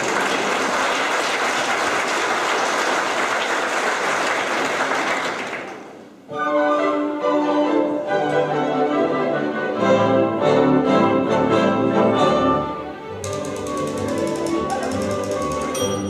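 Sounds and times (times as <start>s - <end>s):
audience applauding: 0.0s - 6.0s, 13.3s - 15.8s
orchestra playing: 6.3s - 16.0s.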